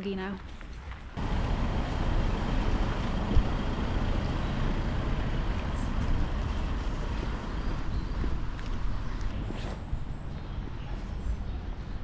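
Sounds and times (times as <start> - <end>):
road noise: 0.6 - 12.0
car driving rumble: 1.2 - 9.3.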